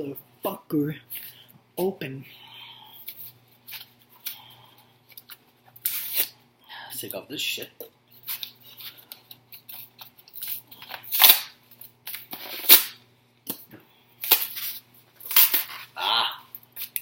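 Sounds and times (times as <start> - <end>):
packaging being torn open: 9.6 - 13.0, 14.2 - 15.9.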